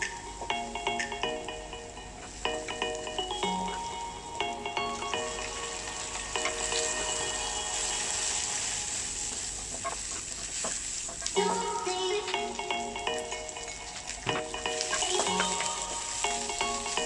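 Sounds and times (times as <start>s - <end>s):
light background music: 0.0s - 17.0s
food sizzling in hot oil: 4.8s - 17.0s.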